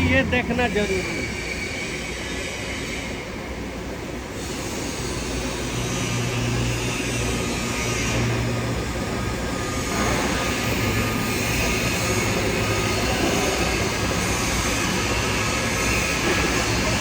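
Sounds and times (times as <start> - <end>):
low electrical hum: 0.0 - 17.0
welding hiss: 4.4 - 17.0.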